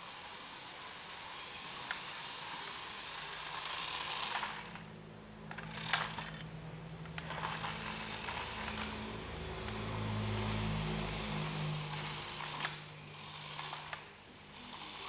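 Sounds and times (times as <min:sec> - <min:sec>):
low motor hum: 0:04.3 - 0:15.0.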